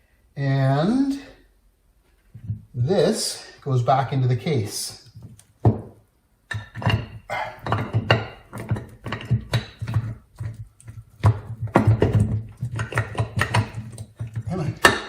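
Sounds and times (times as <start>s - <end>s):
metal knocks and taps: 5.1s - 15.0s.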